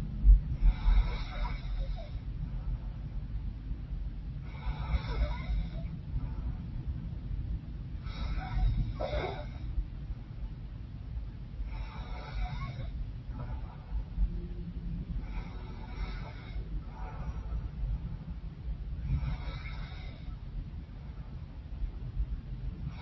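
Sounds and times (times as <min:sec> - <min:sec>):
constant low rumble: 0:00.0 - 0:23.0
woman snoring wheezily: 0:04.8 - 0:05.8, 0:08.2 - 0:09.6, 0:12.0 - 0:12.9.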